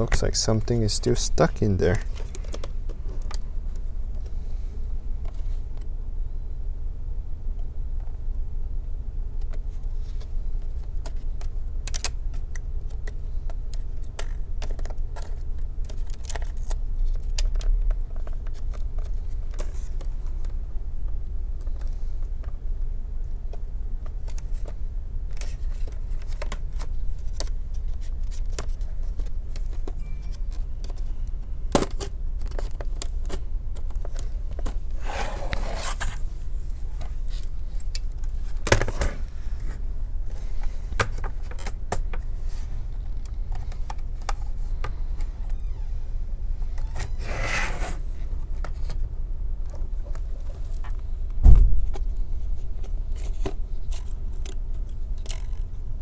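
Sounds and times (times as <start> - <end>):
steady low hum: 0.0 - 14.5, 47.9 - 56.0
heavy knock: 51.4 - 52.2
plastic clicks and scrapes: 51.9 - 55.8.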